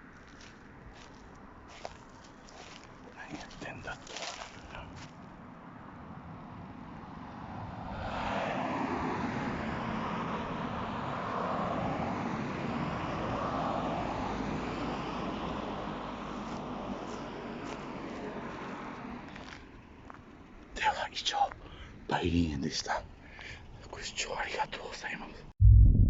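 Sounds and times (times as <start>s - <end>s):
vehicle passing: 0.0s - 19.9s.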